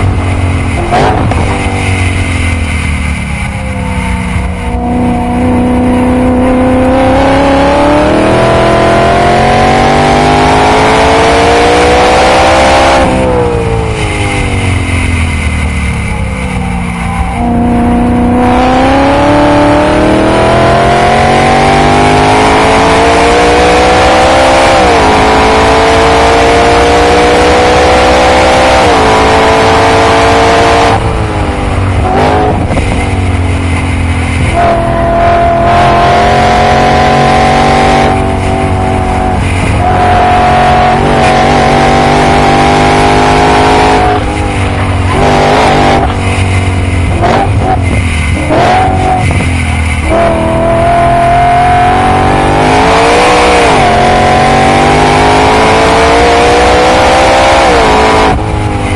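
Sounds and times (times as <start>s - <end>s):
car engine revving at full throttle: 0.0s - 58.9s.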